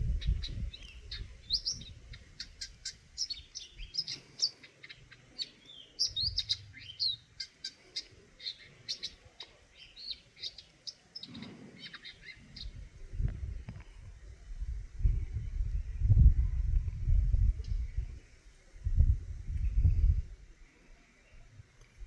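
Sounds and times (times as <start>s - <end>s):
bird chirping: 0.0s - 12.8s.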